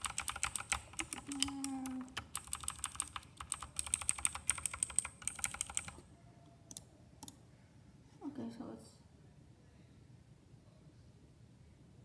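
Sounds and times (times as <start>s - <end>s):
mechanical keyboard typing: 0.0s - 6.0s.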